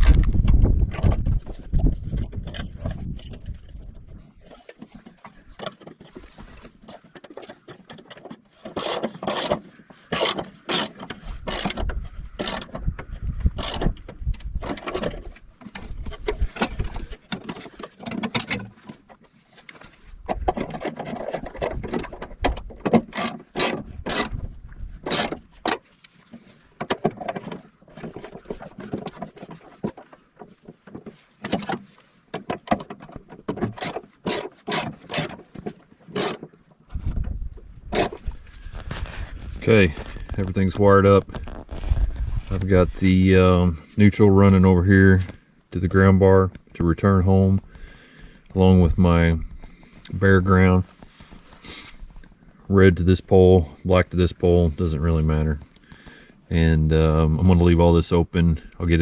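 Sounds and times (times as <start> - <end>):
hand tools clicking and scraping: 1.1 - 36.8, 37.9 - 40.6, 51.0 - 52.3.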